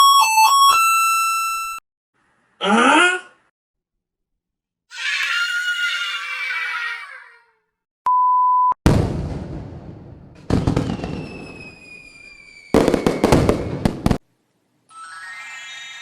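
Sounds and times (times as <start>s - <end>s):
high beep tone: 8.1s - 8.8s
firework bangs: 8.8s - 14.2s
firecrackers crackling: 8.9s - 14.2s
falling whistle: 10.7s - 13.8s.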